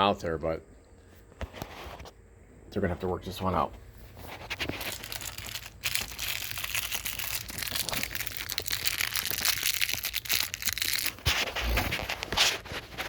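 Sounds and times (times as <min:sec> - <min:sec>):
handling noise on microphone: 0:03.7 - 0:06.1, 0:10.8 - 0:13.0.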